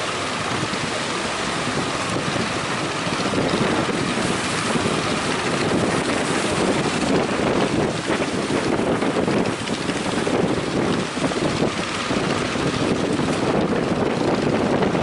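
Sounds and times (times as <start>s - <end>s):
breaking waves rushing: 0.0s - 15.0s
wind buffeting microphone: 0.0s - 15.0s.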